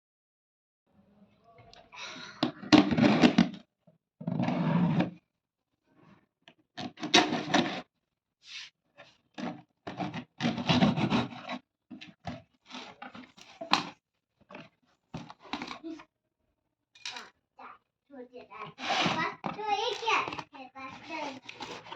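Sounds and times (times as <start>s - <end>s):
cardboard rubbing and scraping: 2.6s - 3.6s, 4.3s - 5.2s, 6.9s - 8.7s, 9.4s - 16.0s, 18.6s - 21.9s.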